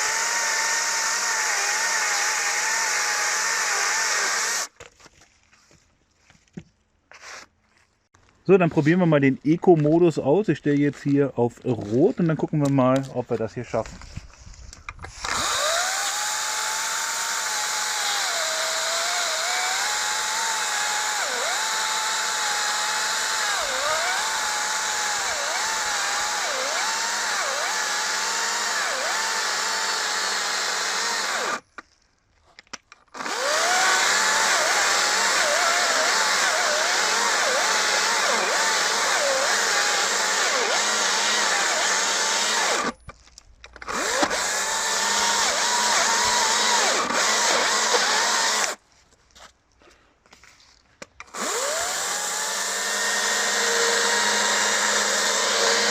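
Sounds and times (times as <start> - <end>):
chainsaw cutting wood: 0.0 - 4.8, 15.0 - 31.7, 33.0 - 43.0, 43.8 - 48.8, 51.2 - 55.9.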